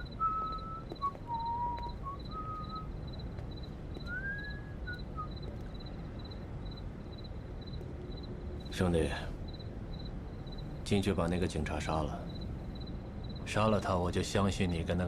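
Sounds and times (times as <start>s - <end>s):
bird whistling: 0.0s - 2.9s, 4.0s - 5.4s
insect chirping: 0.0s - 15.0s
steady low rumble: 0.0s - 15.0s.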